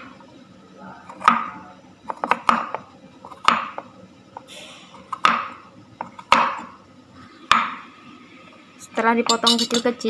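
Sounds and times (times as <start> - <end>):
knife chopping on cutting board: 1.1 - 3.9, 5.0 - 6.7, 7.5 - 7.8.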